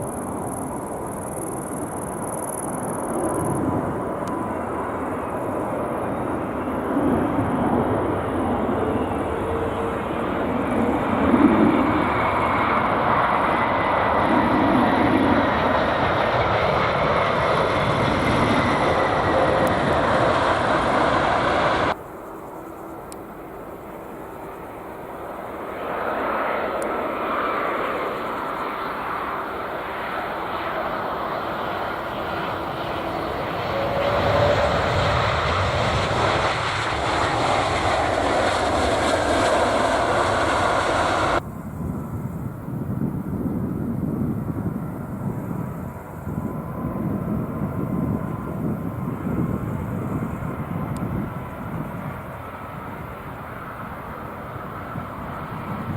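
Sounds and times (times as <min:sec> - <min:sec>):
jet engines of landing airliner: 0:00.0 - 0:55.9
wind on microphone: 0:06.5 - 0:22.0, 0:31.3 - 0:55.9.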